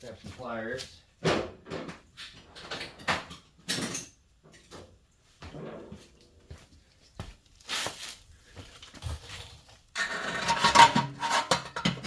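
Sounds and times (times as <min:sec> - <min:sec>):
pliers scraping metal pipe: 0:10.0 - 0:11.9.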